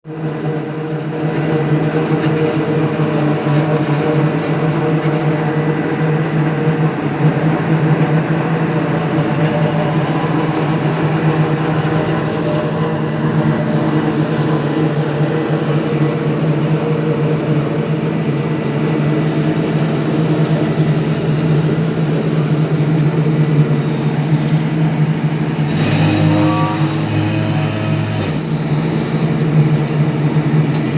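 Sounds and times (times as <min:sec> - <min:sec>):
heavy engine running: 0:00.1 - 0:30.9
second machine sound: 0:25.6 - 0:29.3.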